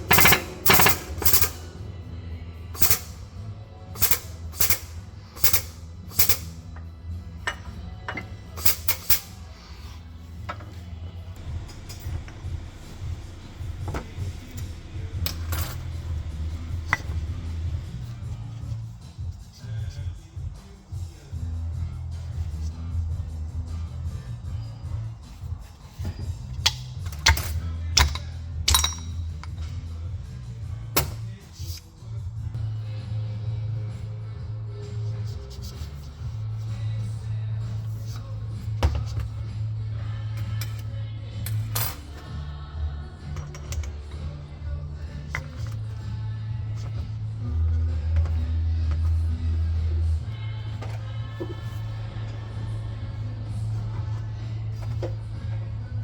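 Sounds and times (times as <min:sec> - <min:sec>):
metal parts clinking: 0:00.0 - 0:01.7, 0:02.8 - 0:03.2, 0:04.0 - 0:06.6, 0:07.4 - 0:09.4, 0:11.4 - 0:17.6, 0:26.0 - 0:29.8, 0:31.0 - 0:31.9, 0:41.5 - 0:42.2, 0:43.4 - 0:44.0, 0:45.3 - 0:45.9
background music with bass line: 0:00.0 - 0:56.0
steady low hum: 0:00.0 - 0:56.0
hammer striking metal: 0:26.7 - 0:29.6.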